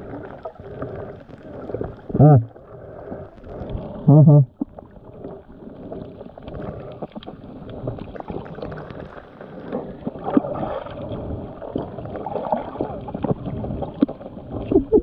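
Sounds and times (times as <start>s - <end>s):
sea water sloshing and gurgling: 0.0s - 15.0s.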